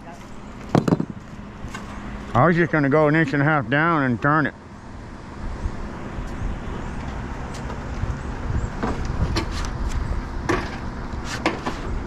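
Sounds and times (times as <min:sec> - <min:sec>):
steady low rumble: 0:00.2 - 0:11.2
knocks and taps of roofing work: 0:00.7 - 0:01.2.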